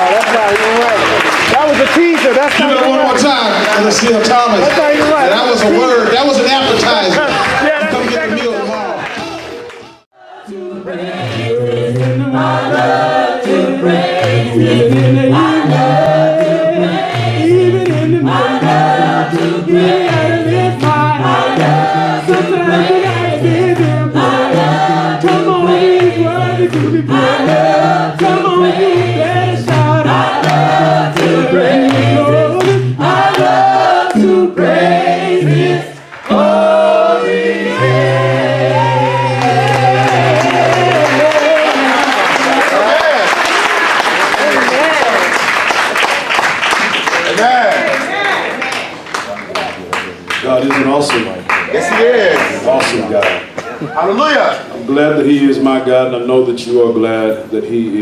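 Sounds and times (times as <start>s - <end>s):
low bass voices rhythmic pattern: 0.0s - 45.2s
choir singing a cappella: 10.1s - 42.7s.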